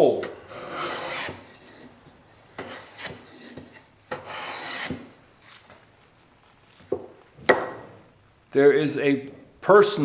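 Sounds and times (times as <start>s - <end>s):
tool scraping across wood: 0.2s - 5.8s.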